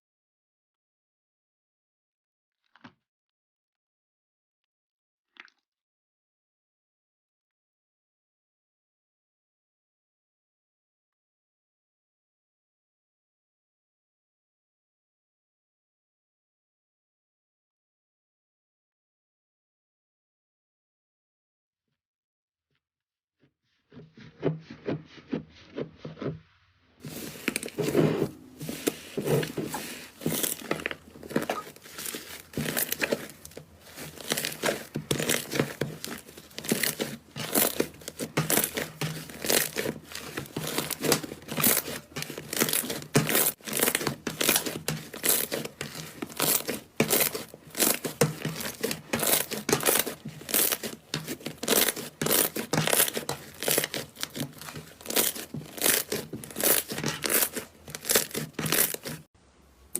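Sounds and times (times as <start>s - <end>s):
crunchy slime crackling: 27.0s - 59.3s.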